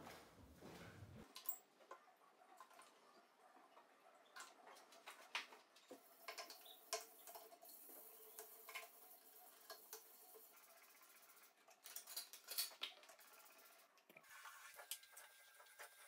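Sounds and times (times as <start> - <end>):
small objects clicking and tapping: 5.0 - 7.6.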